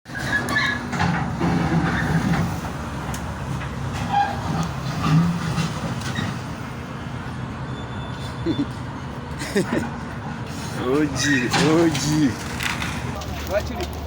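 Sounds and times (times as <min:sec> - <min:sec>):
clanks and knocks: 0:00.1 - 0:02.5
heavy engine rumbling: 0:00.1 - 0:14.0.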